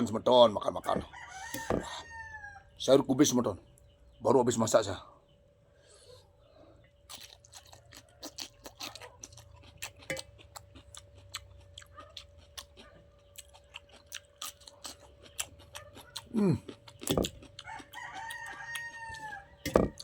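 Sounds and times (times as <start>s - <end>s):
chewing cabbage crunches: 7.0s - 20.0s.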